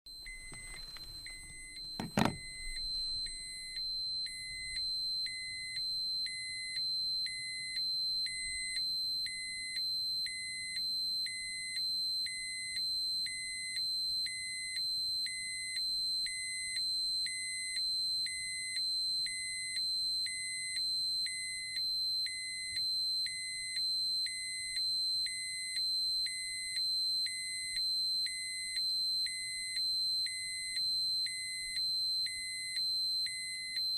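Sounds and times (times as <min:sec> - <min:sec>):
dosimeter alarm high tone: 0:00.1 - 0:33.9.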